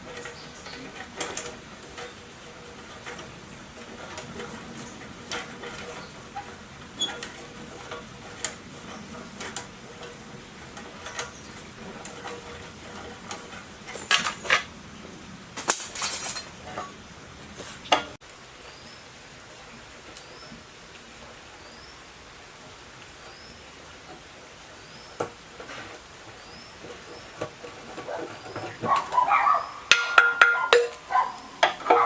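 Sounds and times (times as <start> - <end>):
metal tools clinking: 0.0 - 17.1, 28.5 - 32.0.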